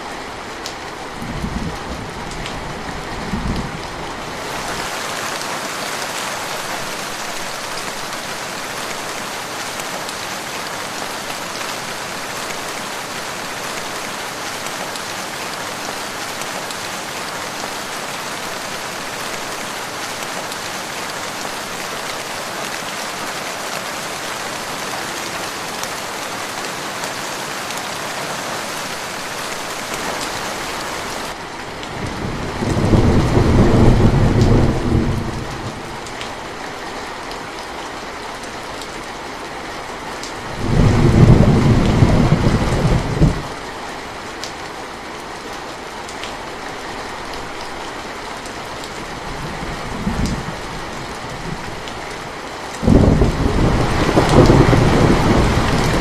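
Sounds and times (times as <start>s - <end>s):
steady rain falling: 0.0s - 56.0s
low rumble of thunder: 32.0s - 35.8s, 40.5s - 43.5s, 52.8s - 56.0s.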